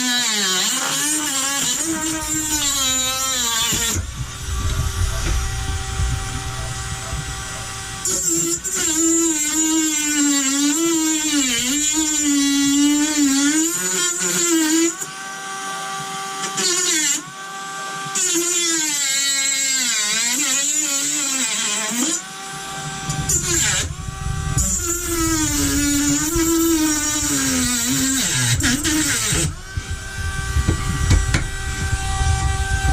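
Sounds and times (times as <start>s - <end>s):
rotary tool motor whine: 0.0s - 32.9s
disc grinding metal: 0.6s - 13.2s, 22.5s - 32.9s.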